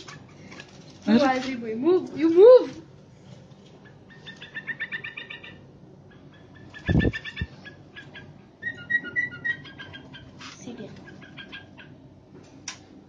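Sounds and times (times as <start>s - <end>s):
bird chattering calls: 3.8s - 10.4s, 11.0s - 12.0s.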